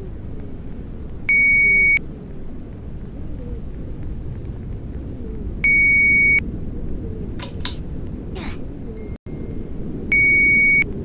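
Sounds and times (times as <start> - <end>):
high-pitched electronic alert beeps: 1.3 - 2.0, 10.1 - 10.8.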